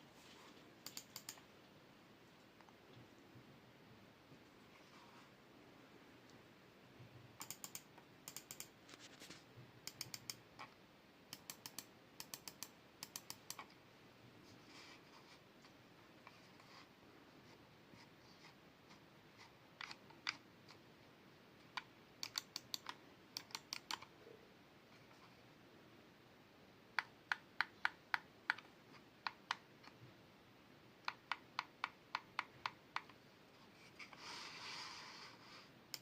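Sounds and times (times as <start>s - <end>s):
mouse buttons clicking: 0.8s - 1.5s, 7.4s - 8.8s, 9.8s - 10.7s, 11.3s - 13.7s, 21.7s - 24.1s, 27.0s - 30.0s, 31.0s - 33.2s.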